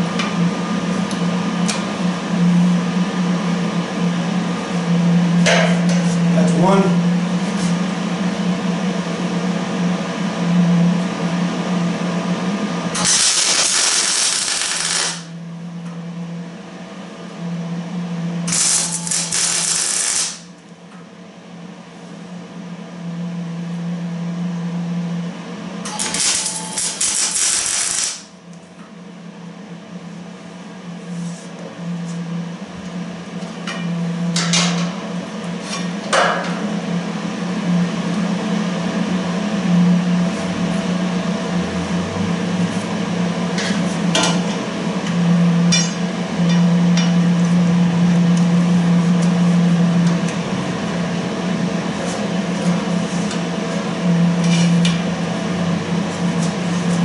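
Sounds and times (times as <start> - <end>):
steady hum: 0.0 - 57.0
welding arc crackling: 13.0 - 15.3, 18.5 - 20.5, 25.9 - 28.3.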